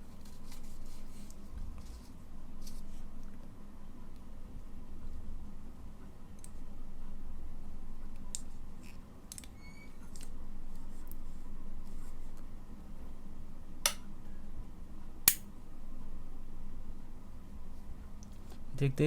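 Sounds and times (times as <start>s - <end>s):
wall switch clicks: 15.3s - 15.5s.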